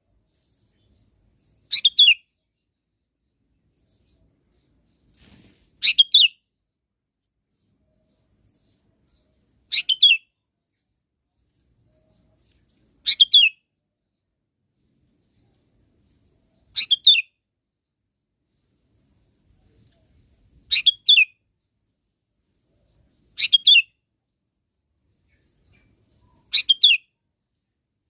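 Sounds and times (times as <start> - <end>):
bird chirping calls: 0.6 - 2.3, 7.6 - 10.4, 11.8 - 13.6, 16.5 - 17.3, 19.7 - 21.3, 22.8 - 24.0, 25.1 - 27.0.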